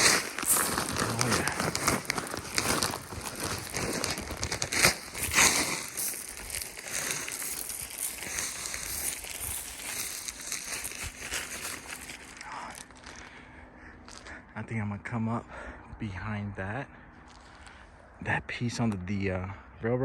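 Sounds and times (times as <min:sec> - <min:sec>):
twigs snapping: 0:00.0 - 0:13.3
leaves crackling underfoot: 0:00.0 - 0:13.4.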